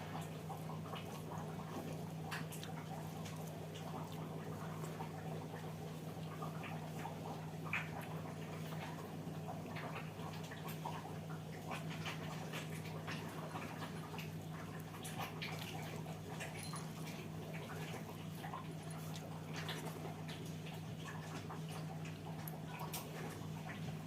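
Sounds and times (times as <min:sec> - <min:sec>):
soft chewing: 0:00.0 - 0:24.0.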